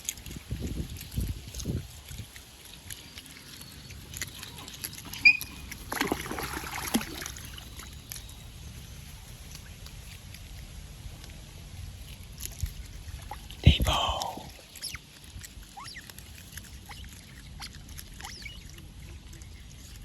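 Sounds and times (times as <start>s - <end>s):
otters splashing in water: 0.0s - 8.2s, 14.4s - 19.7s
otter high chirp: 5.2s - 5.7s.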